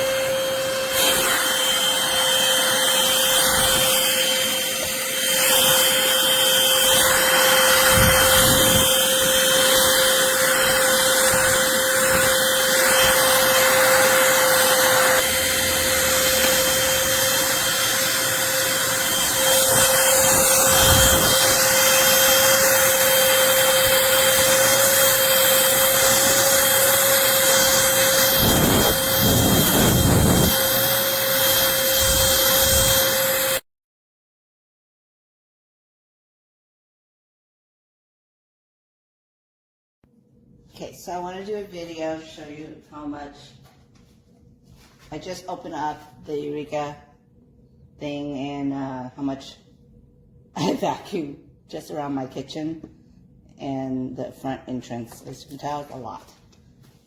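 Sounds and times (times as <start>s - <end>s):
vacuum cleaner whining: 0.0s - 33.6s.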